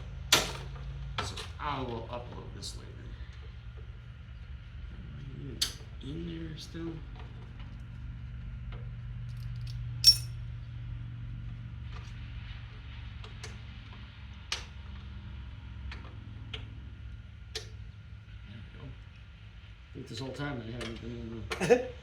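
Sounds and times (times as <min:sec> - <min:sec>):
steady low hum: 0:00.0 - 0:22.0
metal tools clinking: 0:10.0 - 0:10.3.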